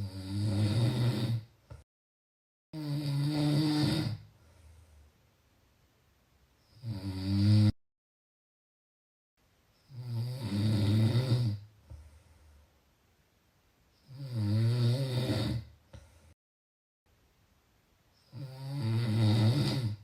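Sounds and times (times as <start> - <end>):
rattling snores: 0.0 - 1.5, 2.8 - 4.3, 6.8 - 7.8, 9.9 - 11.7, 14.1 - 15.7, 18.3 - 20.0.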